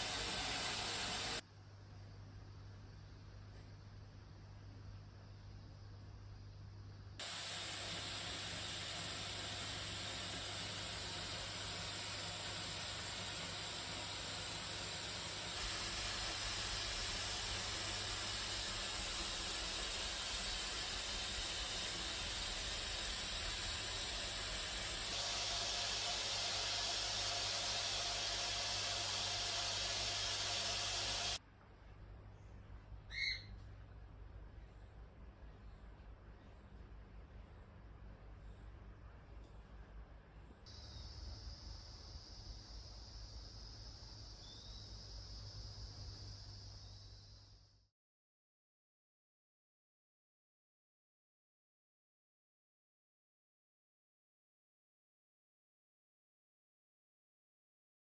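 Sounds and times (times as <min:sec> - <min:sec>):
steady hissing rush: 0:00.0 - 0:01.4, 0:07.2 - 0:31.4, 0:40.7 - 0:47.5.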